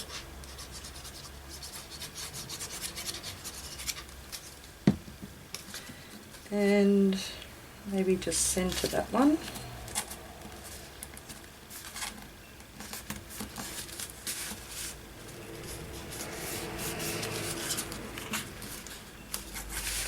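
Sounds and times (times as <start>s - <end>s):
paper rustling and rubbing: 12.8s - 20.0s.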